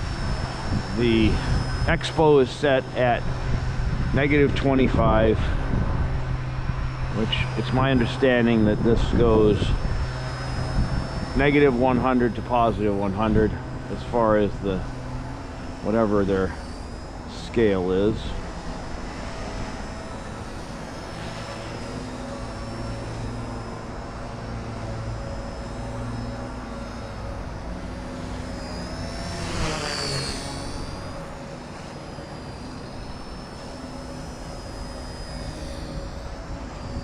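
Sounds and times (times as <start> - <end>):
low wind noise: 0.0 - 37.0
toy helicopter rotors whining: 0.0 - 37.0.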